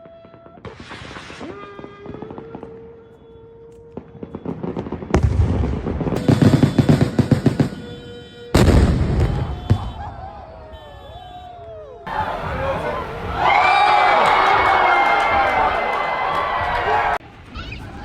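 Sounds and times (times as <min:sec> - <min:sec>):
fireworks pops: 0:00.0 - 0:10.2
loud firework blasts: 0:00.0 - 0:16.7
rapid bangs and crackling: 0:04.0 - 0:10.2.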